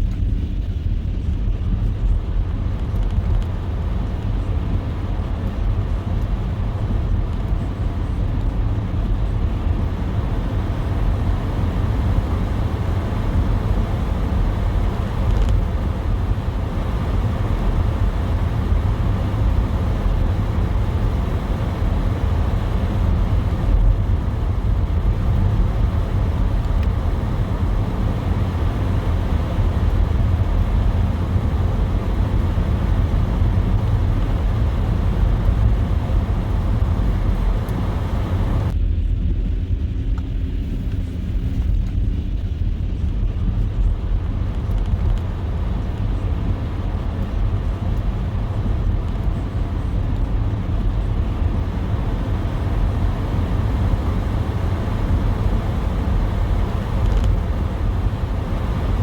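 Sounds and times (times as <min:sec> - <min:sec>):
car driving on snowy road: 0:00.0 - 0:59.0.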